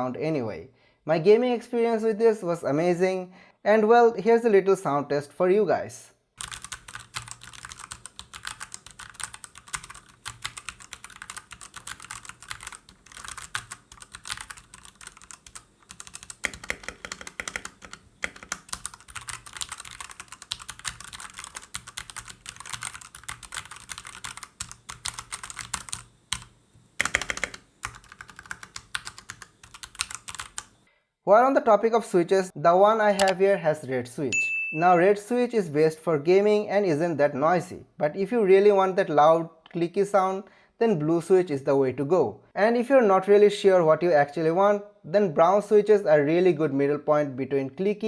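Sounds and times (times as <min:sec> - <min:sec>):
mechanical keyboard typing: 0:06.4 - 0:30.8, 0:33.1 - 0:33.4.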